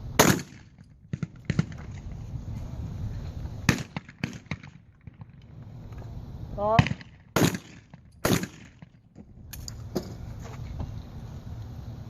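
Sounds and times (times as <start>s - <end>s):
distant shotgun shots: 0.2s - 1.8s, 3.7s - 5.4s, 6.7s - 9.0s
loud shotgun shots: 0.2s - 1.8s, 3.7s - 5.3s, 6.7s - 8.9s.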